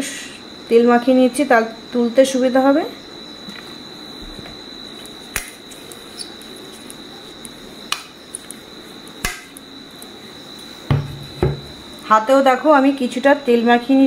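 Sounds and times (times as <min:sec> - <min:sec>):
plate clinking and knocking: 0:10.9 - 0:11.8.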